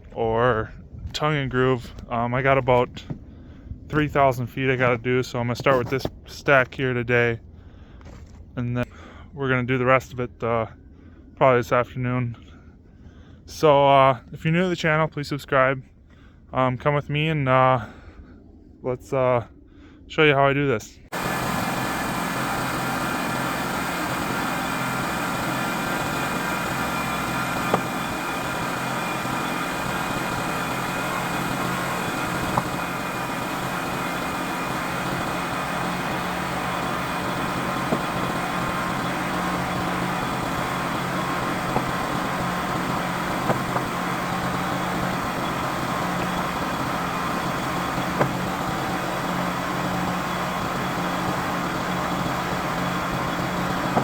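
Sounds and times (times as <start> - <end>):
sawmill engine running: 21.1 - 54.0.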